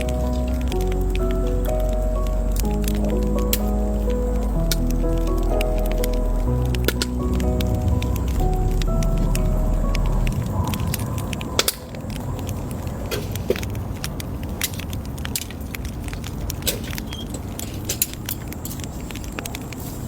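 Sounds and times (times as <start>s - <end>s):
steady low rumble: 0.0s - 13.1s
campfire crackling: 0.0s - 20.0s.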